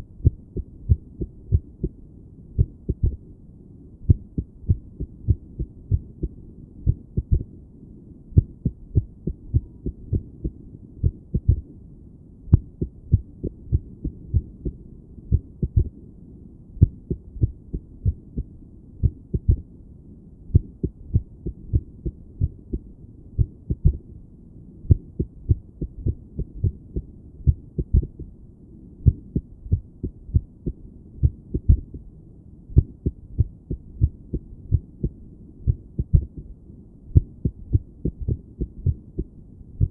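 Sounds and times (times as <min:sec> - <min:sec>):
heartbeat through stethoscope: 0:00.0 - 0:02.0, 0:02.6 - 0:03.3, 0:04.1 - 0:07.5, 0:08.4 - 0:11.7, 0:12.5 - 0:16.0, 0:16.8 - 0:19.7, 0:20.5 - 0:24.1, 0:24.9 - 0:28.4, 0:29.0 - 0:32.0, 0:32.7 - 0:36.5, 0:37.1 - 0:39.9.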